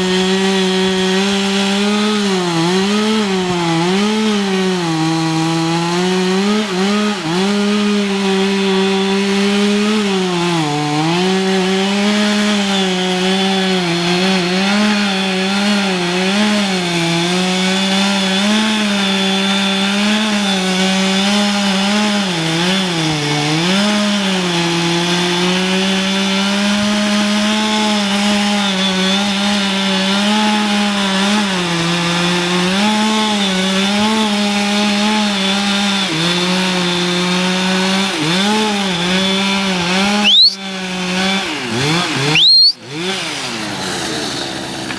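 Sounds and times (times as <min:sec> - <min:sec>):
chainsaw cutting wood: 0:00.0 - 0:44.9.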